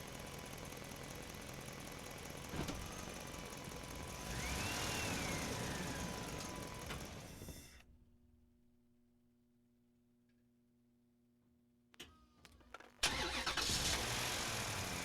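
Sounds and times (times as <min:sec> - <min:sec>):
heavy machine engine running: 0:00.0 - 0:07.8.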